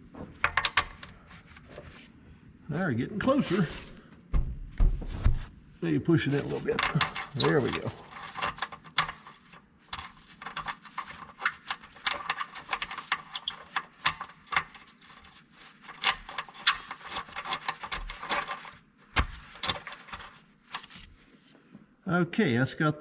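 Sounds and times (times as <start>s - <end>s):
hand tools clicking on metal bolt: 6.8s - 15.0s.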